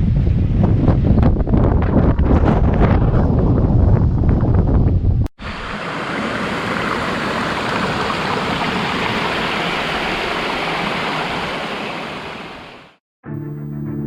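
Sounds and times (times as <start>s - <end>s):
flowing water rushing: 5.4s - 13.0s.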